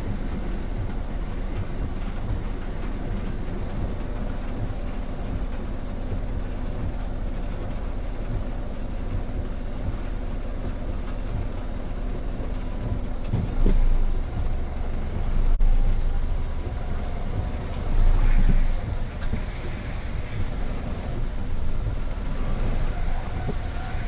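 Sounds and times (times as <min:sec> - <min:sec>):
car engine and road noise: 0:00.0 - 0:24.0.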